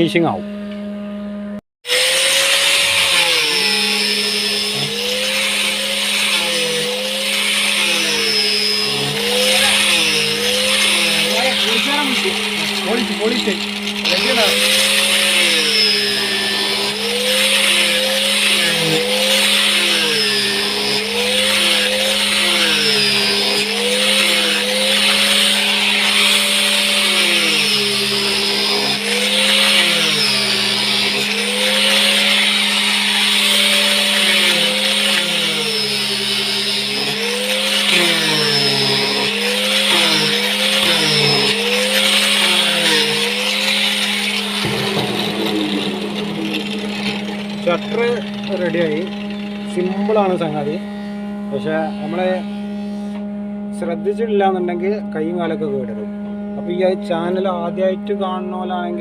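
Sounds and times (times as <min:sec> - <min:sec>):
electric sander whining: 0:00.0 - 0:59.0.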